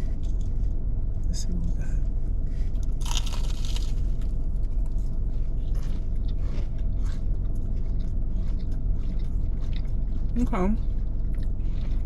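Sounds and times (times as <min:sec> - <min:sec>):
crackling rustles of food bitten: 0:02.8 - 0:12.0.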